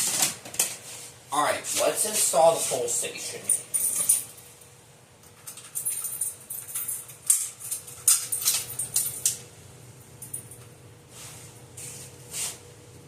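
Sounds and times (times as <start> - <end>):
faint steady hum: 0.0 - 13.0
metallic clinks and jingles: 3.4 - 4.7, 5.3 - 9.4.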